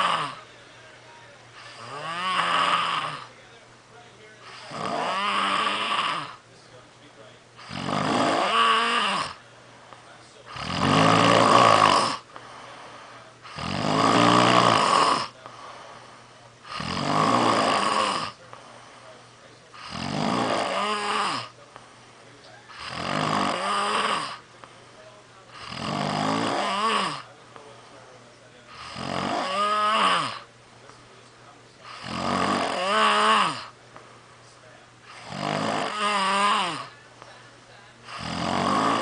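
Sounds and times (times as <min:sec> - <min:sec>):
person snoring: 0:00.0 - 0:00.5, 0:01.6 - 0:03.3, 0:04.4 - 0:06.4, 0:07.6 - 0:09.4, 0:10.5 - 0:16.0, 0:16.6 - 0:18.5, 0:19.7 - 0:21.6, 0:22.6 - 0:24.4, 0:25.5 - 0:27.3, 0:28.7 - 0:30.5, 0:31.8 - 0:33.8, 0:35.1 - 0:37.0, 0:38.0 - 0:39.0
quiet breathing: 0:08.8 - 0:10.8, 0:11.6 - 0:13.8, 0:14.4 - 0:17.0, 0:17.6 - 0:20.1, 0:20.7 - 0:23.1, 0:23.8 - 0:25.8, 0:27.0 - 0:29.1, 0:33.4 - 0:35.4, 0:36.1 - 0:39.0.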